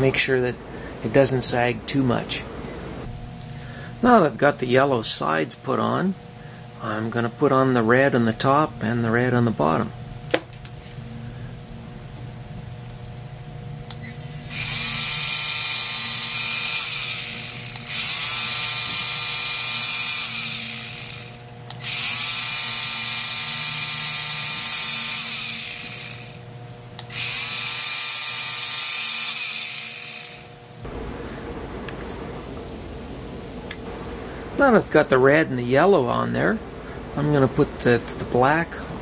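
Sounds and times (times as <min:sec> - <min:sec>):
cooling fan humming: 0:00.0 - 0:39.0
pen motor grinding whir: 0:14.0 - 0:30.6.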